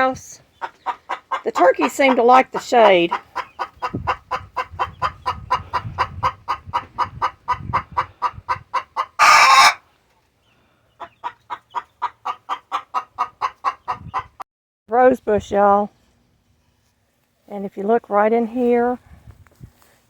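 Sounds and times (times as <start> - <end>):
hen clucking: 0.0 - 9.8, 10.9 - 14.4.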